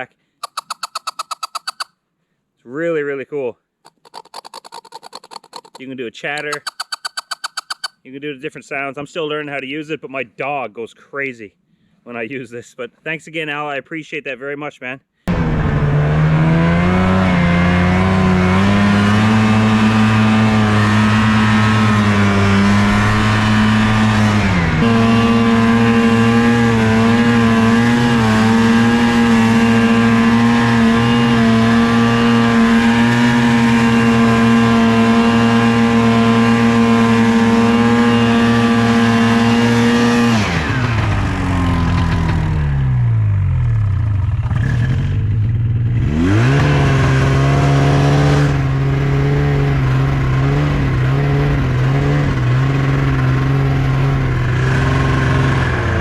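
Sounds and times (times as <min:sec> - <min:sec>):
snowmobile engine revving: 0:15.3 - 0:43.2, 0:45.9 - 0:56.0.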